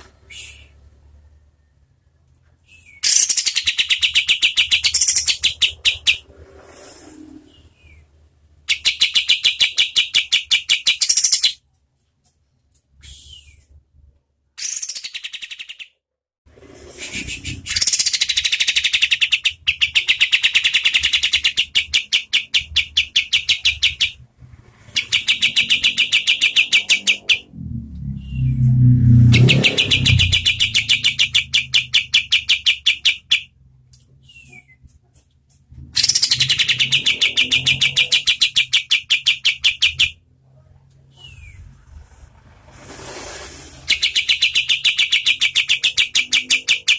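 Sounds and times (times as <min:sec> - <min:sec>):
bird singing rattling trills: 0:24.9 - 0:27.5, 0:36.0 - 0:40.2, 0:43.9 - 0:46.9
low rumble: 0:27.4 - 0:31.0, 0:40.5 - 0:44.0.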